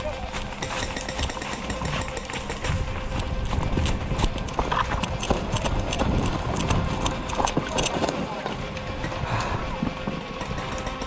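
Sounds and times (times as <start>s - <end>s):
footsteps crunching in snow: 0.0s - 8.4s
gear handling rumble on microphone: 0.0s - 10.9s.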